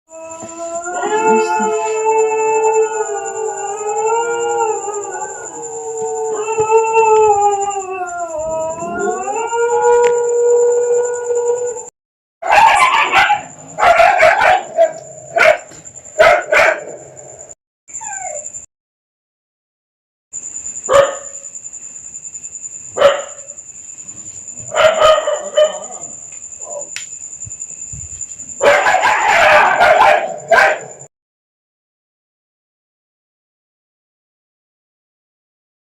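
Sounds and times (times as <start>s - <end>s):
dog howling: 0.1s - 17.0s, 28.6s - 31.0s
high-pitched whine: 0.2s - 11.9s
dog barking: 12.4s - 17.0s, 20.9s - 21.4s, 23.0s - 23.5s, 24.7s - 25.9s, 28.6s - 31.1s.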